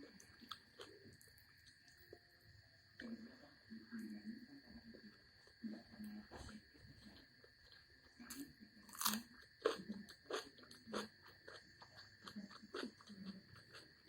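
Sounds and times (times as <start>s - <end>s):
chewing crunchy food: 0.0s - 2.4s, 4.0s - 14.0s.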